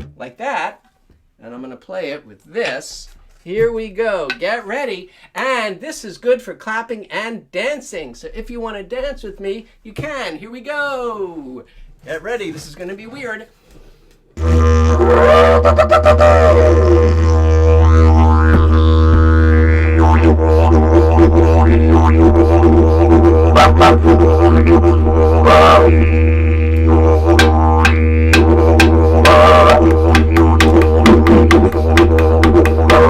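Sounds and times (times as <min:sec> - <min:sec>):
didgeridoo drone: 0:14.4 - 0:33.0.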